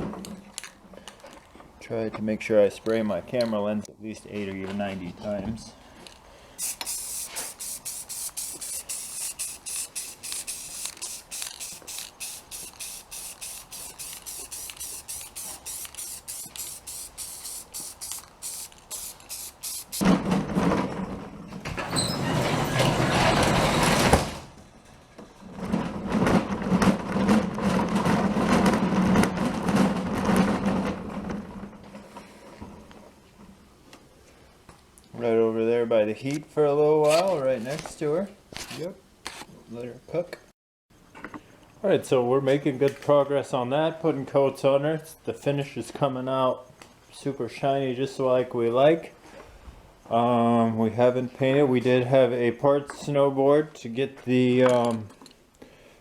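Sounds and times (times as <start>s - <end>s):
spray can ball rattling: 6.6s - 20.0s
spray hissing with low hum: 6.6s - 20.0s.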